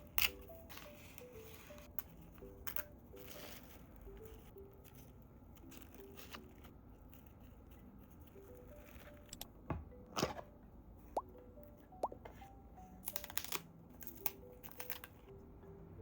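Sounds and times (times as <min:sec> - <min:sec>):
soft background music: 0:00.0 - 0:16.0.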